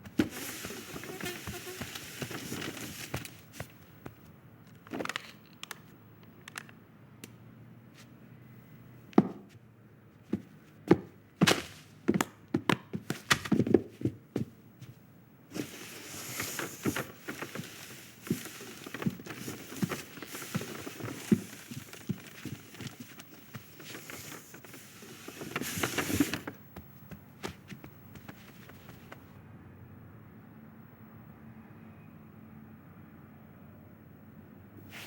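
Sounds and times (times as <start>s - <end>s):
footstep-like thuds: 9.2s - 9.6s, 10.2s - 15.0s, 25.4s - 29.3s
steady hiss: 15.5s - 29.2s.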